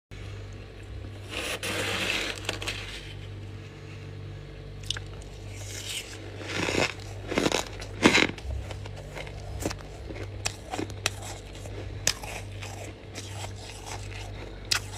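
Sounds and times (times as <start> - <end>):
crunchy bites: 4.8 - 14.9.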